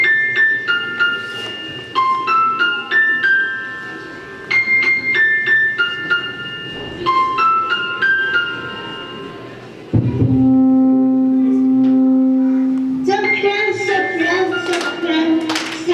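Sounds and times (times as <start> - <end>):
tinkling keyboard melody: 10.4 - 15.4.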